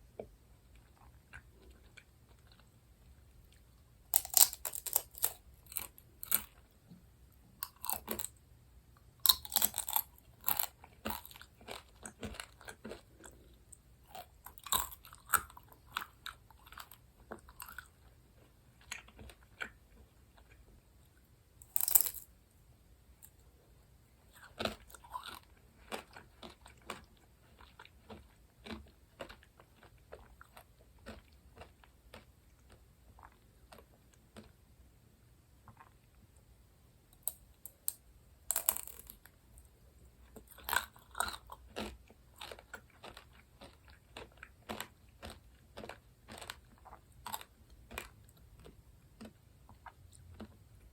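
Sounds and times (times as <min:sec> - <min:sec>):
person chewing crisp food: 0:00.6 - 0:08.4, 0:09.2 - 0:20.7, 0:21.6 - 0:22.3, 0:24.2 - 0:34.6, 0:35.7 - 0:36.0, 0:37.2 - 0:50.9.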